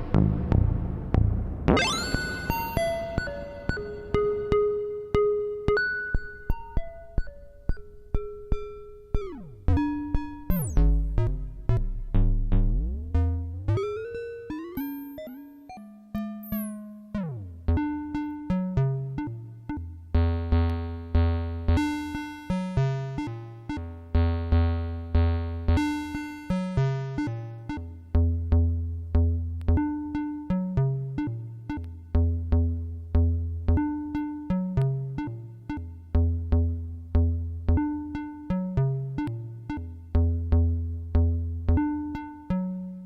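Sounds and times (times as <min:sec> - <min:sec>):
synthesizer struck ringing notes: 0:01.7 - 0:05.4.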